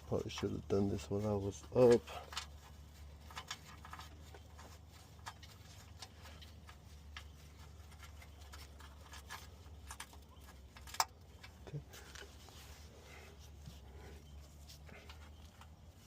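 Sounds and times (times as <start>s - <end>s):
low steady hum: 0.0s - 16.0s
small clicks of bolts handled: 1.7s - 12.4s.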